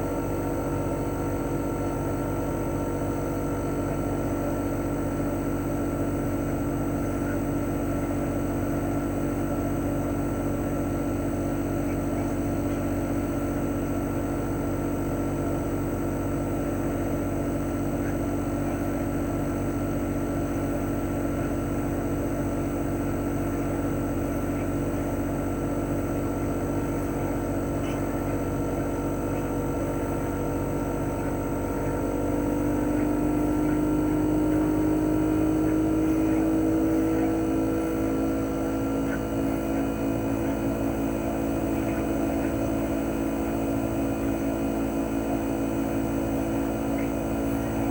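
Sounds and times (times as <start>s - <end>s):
compressor humming: 0.0s - 47.9s
fan whooshing: 29.2s - 47.9s.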